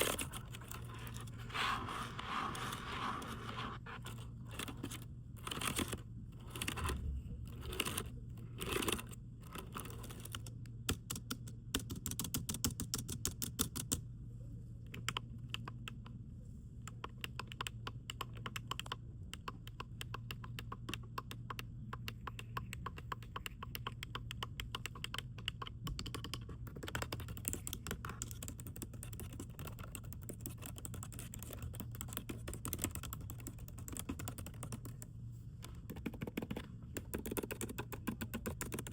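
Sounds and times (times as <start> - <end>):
typing on a keyboard: 7.6 - 14.0, 16.9 - 38.9.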